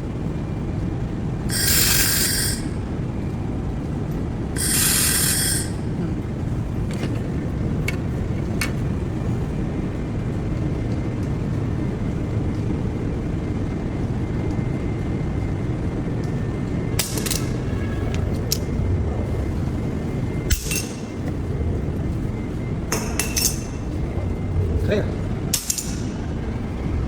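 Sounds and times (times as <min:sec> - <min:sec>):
low machine hum: 0:00.0 - 0:27.0
laser welder hissing sizzle: 0:01.5 - 0:02.8, 0:04.6 - 0:05.9.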